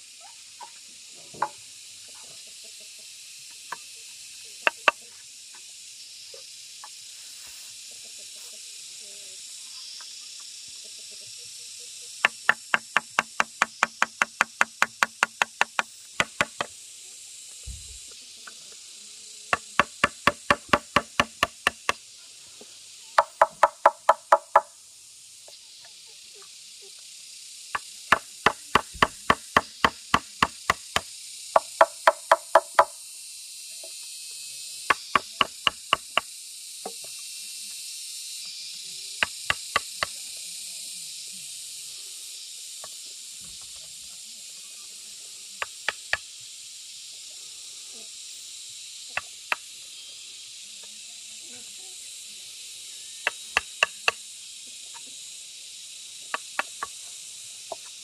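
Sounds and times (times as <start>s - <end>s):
rapid strikes on bamboo: 4.6s - 5.0s, 12.2s - 16.8s, 19.5s - 22.0s, 23.2s - 24.7s, 27.8s - 33.0s, 34.8s - 37.0s, 39.2s - 40.2s, 45.6s - 46.3s, 53.2s - 54.2s, 56.3s - 57.0s.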